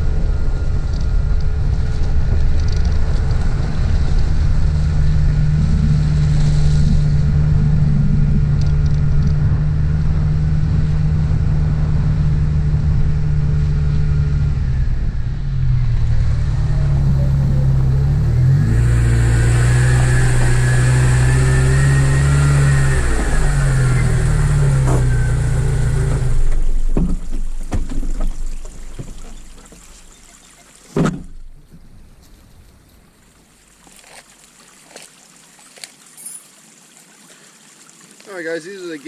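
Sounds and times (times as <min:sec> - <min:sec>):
vehicle engine running: 0:00.0 - 0:29.8.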